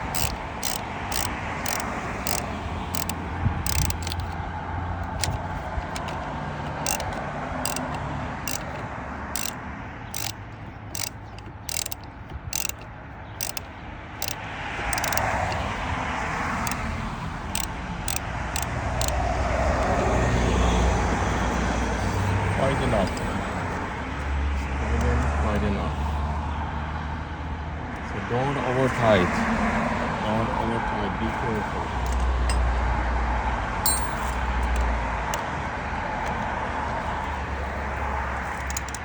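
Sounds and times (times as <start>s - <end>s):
ratchet wrench clicking: 0.0s - 4.4s, 5.0s - 15.7s, 16.6s - 20.1s, 32.0s - 32.7s, 33.8s - 35.5s, 38.4s - 39.0s.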